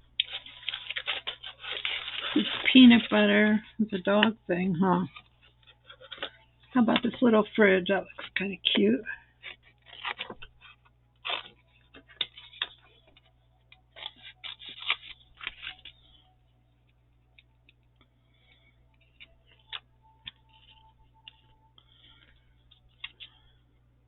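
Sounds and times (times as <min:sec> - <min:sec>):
paper rustling: 0:00.2 - 0:04.2, 0:05.0 - 0:07.4, 0:09.4 - 0:16.3, 0:18.4 - 0:23.6.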